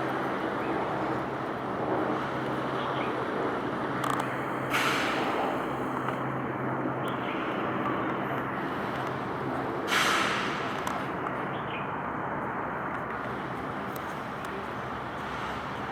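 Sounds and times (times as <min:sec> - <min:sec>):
motor traffic hum: 0:00.0 - 0:15.9
air brakes hissing: 0:09.9 - 0:10.6.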